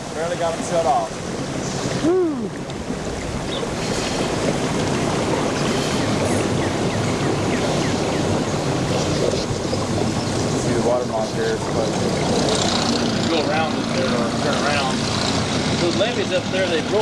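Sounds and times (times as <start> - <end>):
water rushing past boat: 0.0 - 17.0
wind buffeting microphone: 0.0 - 17.0.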